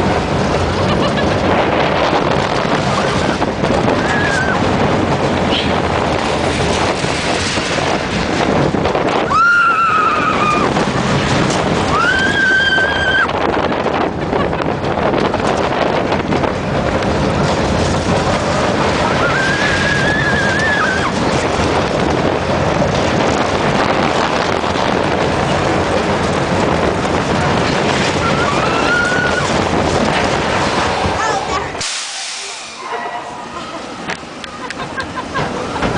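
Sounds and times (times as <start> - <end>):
roller coaster rumbling on track: 0.0 - 35.9
riders screaming: 4.0 - 4.6, 9.2 - 10.8, 11.8 - 13.4, 19.0 - 21.2, 28.1 - 29.6.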